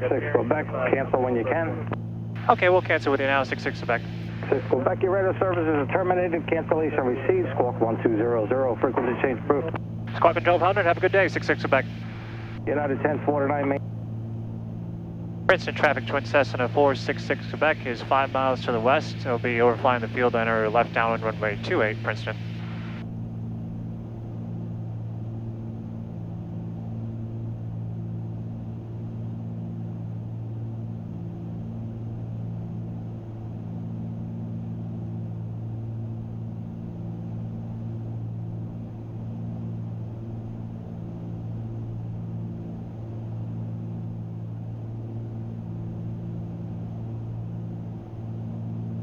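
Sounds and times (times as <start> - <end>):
aircraft cabin engine drone: 0.0 - 49.0.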